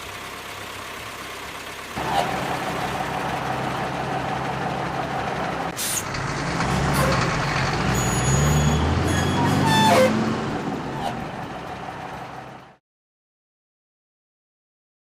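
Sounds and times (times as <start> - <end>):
truck diesel engine: 0.0 - 12.8
air brake hiss: 5.8 - 6.0.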